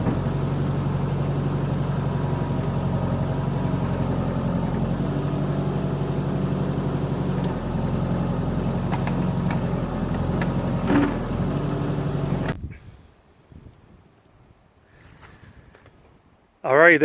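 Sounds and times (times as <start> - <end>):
diesel engine running: 0.0 - 12.6.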